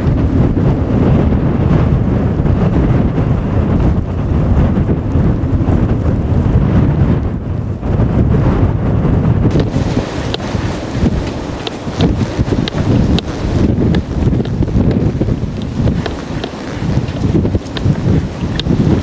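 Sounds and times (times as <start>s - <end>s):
blizzard wind gusting: 0.0s - 19.0s.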